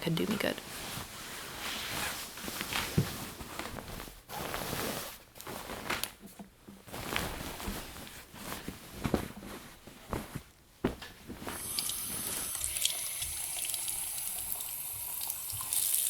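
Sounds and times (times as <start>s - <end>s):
bedcovers rustling: 0.2s - 12.5s
soft footsteps: 0.6s - 12.6s.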